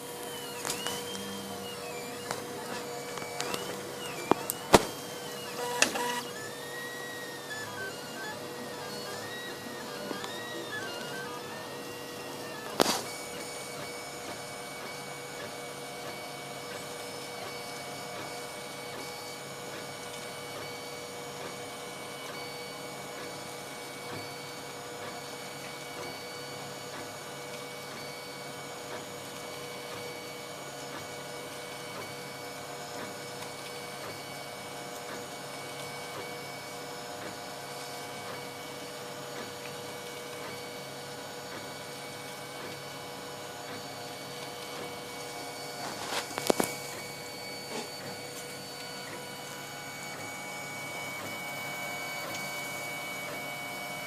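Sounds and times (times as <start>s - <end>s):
printer motors whining: 0.0s - 54.0s.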